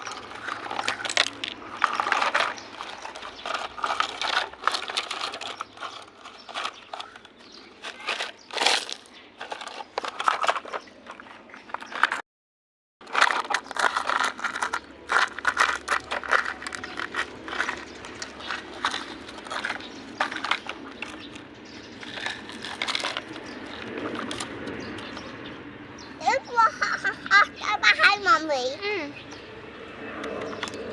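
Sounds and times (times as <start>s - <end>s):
crinkling and scraping: 0.0s - 12.2s, 13.0s - 25.6s, 30.2s - 30.9s
small objects clattering: 0.0s - 12.2s, 13.0s - 25.4s.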